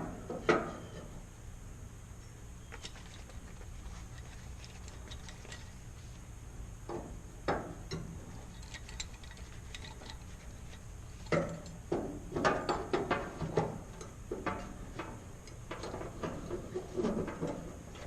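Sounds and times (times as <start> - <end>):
steady low hum: 0.0 - 18.0
metal parts and tools clanking: 2.6 - 5.8, 7.9 - 11.8.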